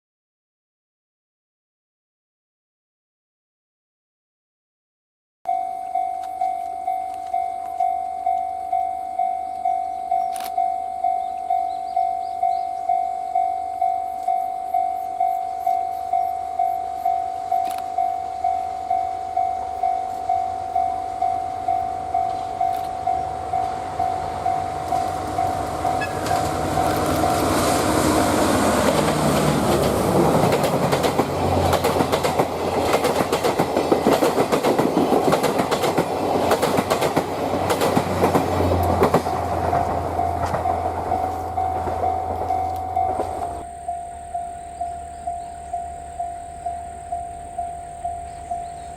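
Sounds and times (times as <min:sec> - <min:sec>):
level crossing bell dinging: 0:05.5 - 0:27.5, 0:40.2 - 0:48.9
diesel locomotive engine drone: 0:05.5 - 0:48.9
train wheels clacking on rail joints: 0:14.2 - 0:48.9.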